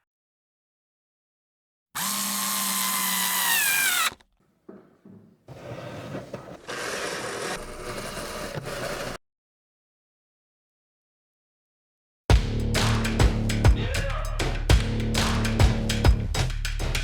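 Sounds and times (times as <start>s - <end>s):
power drill whining: 2.0s - 4.2s.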